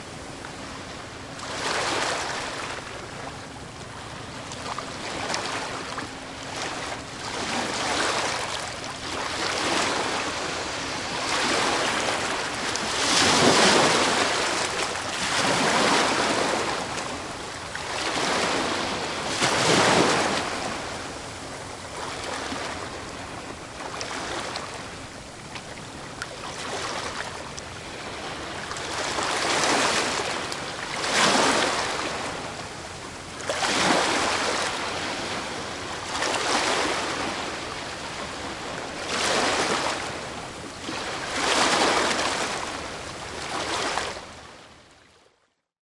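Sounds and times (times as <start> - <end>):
ocean waves crashing: 7.3 - 17.0, 17.9 - 21.1, 27.9 - 32.4.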